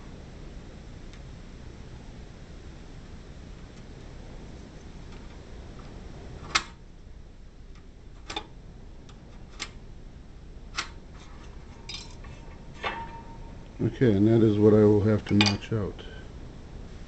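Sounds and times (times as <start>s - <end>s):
low steady background noise: 0.0s - 17.0s.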